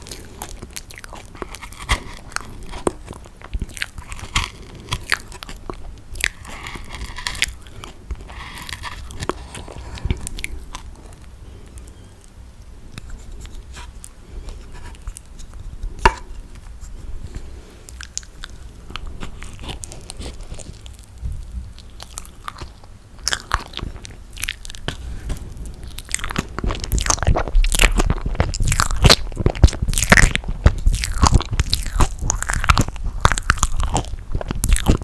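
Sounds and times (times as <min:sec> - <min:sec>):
eating marshmallow: 0:00.0 - 0:16.7, 0:17.3 - 0:35.0.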